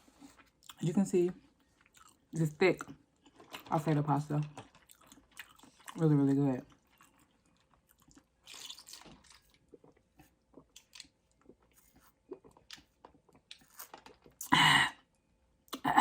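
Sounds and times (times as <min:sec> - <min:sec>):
person chewing wet mouth sounds: 0:01.8 - 0:02.2, 0:04.6 - 0:06.0, 0:06.7 - 0:14.5.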